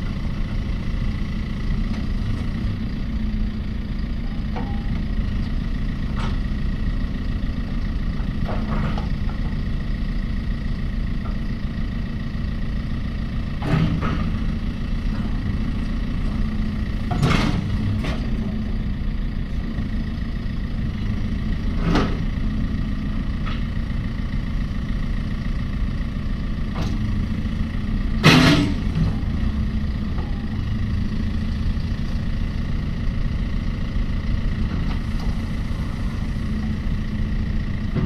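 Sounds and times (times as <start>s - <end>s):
diesel engine running: 0.0s - 38.0s.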